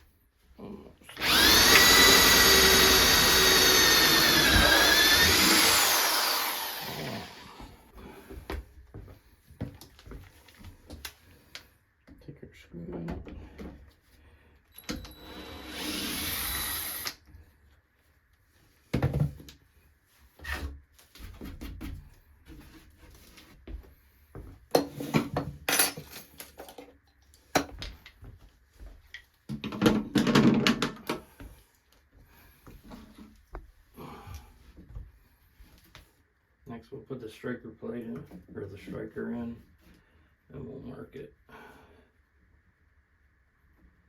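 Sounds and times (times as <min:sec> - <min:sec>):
power drill driving screws: 0:01.2 - 0:07.8, 0:14.8 - 0:17.2.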